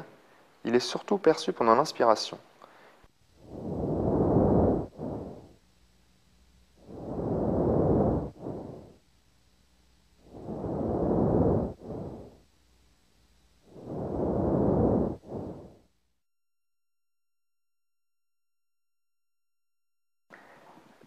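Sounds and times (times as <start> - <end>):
breath sounds through stethoscope: 2.6 - 5.6, 6.8 - 9.0, 10.2 - 12.5, 13.6 - 15.9, 20.3 - 21.0.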